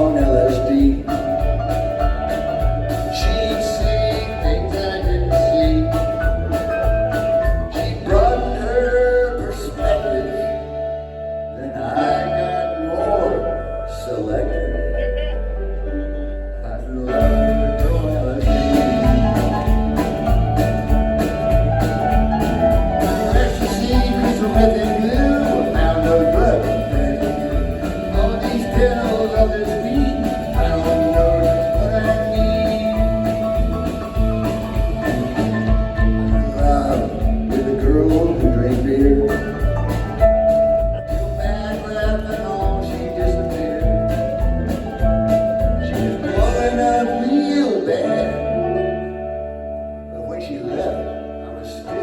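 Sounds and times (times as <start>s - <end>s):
steady drum beat: 0.0s - 8.6s, 17.2s - 47.0s
live rock band playing: 0.0s - 11.5s, 17.1s - 50.1s.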